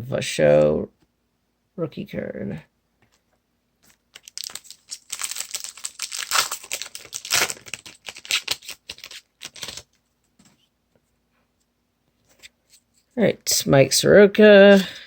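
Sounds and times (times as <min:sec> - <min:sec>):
wrapper being torn and crinkled: 0:03.9 - 0:10.0.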